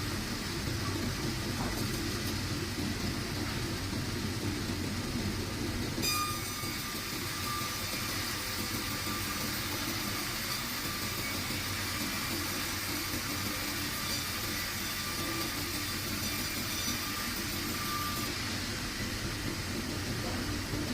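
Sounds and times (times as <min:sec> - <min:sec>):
sawmill machinery rumbling: 0:00.0 - 0:20.9
hiss with faint whistling: 0:06.8 - 0:20.9.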